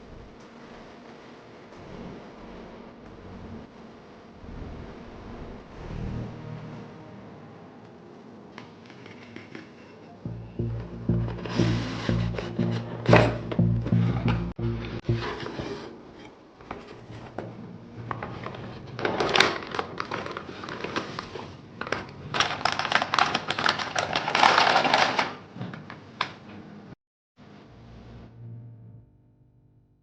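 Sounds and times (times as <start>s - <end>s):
crinkling and rustling: 15.3s - 26.4s.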